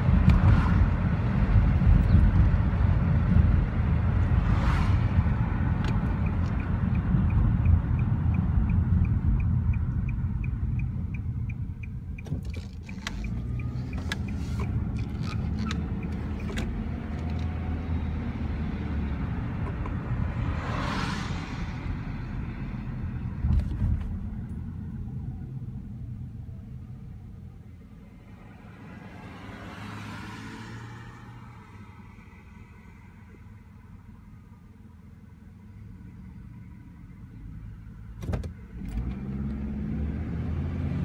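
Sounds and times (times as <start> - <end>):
car road and engine rumble: 0.0 - 41.0
light regular ticking: 5.8 - 17.6
sharp clicks and knocks: 9.0 - 17.6.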